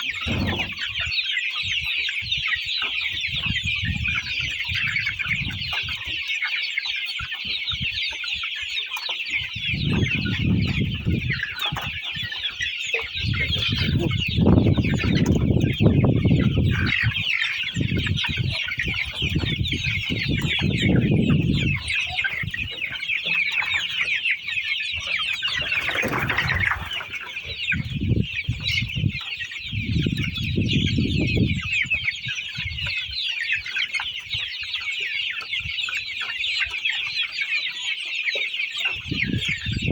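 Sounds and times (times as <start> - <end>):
chickens clucking: 0.0 - 39.9
low rumbling: 0.2 - 1.0.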